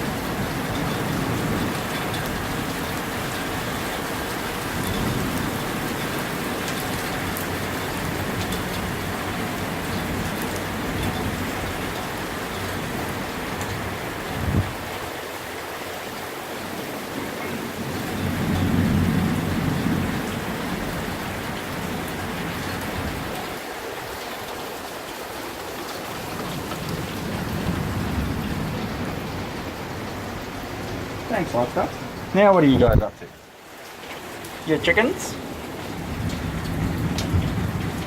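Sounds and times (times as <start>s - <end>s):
heavy rain falling: 0.0s - 38.0s
distant thunder rumbling: 17.0s - 23.6s, 26.2s - 33.4s, 34.8s - 38.0s.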